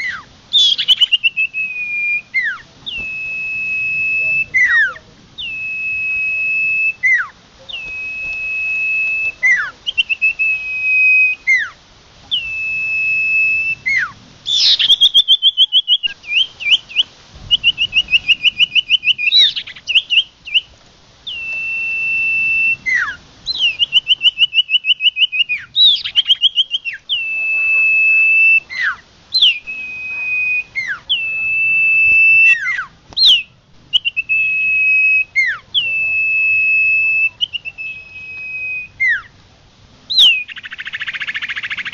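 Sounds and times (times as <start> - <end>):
bird rattling trills: 0.0 - 31.3, 40.1 - 41.9
bird whistles with downward sweep: 0.0 - 39.3, 40.1 - 41.9.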